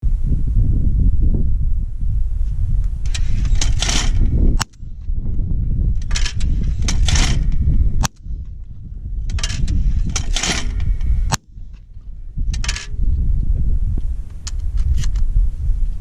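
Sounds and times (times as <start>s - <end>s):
wind rumble on microphone: 0.0s - 16.0s.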